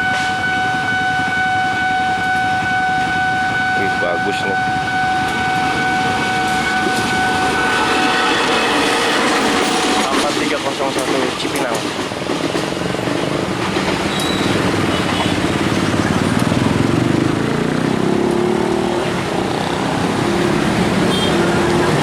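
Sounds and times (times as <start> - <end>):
car engines passing: 14.4 - 22.0
motorcycle engines passing: 14.4 - 22.0.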